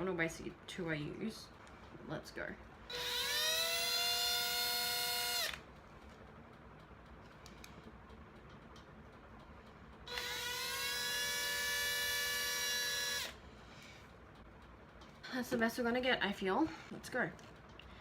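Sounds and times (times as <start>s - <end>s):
cordless drill motor whine: 2.9s - 5.6s, 10.1s - 13.4s.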